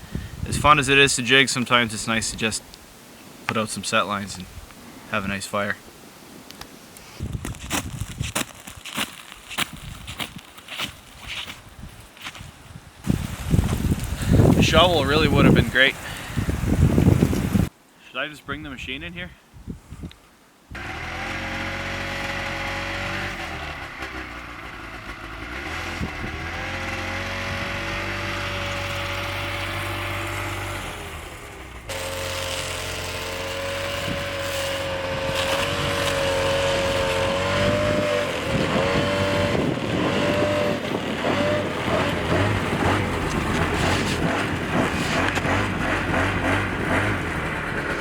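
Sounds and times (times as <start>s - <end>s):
snowmobile engine running: 20.8s - 48.0s.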